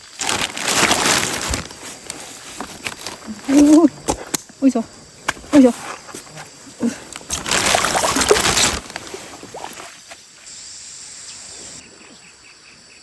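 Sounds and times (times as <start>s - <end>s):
water splashing: 6.8s - 10.2s.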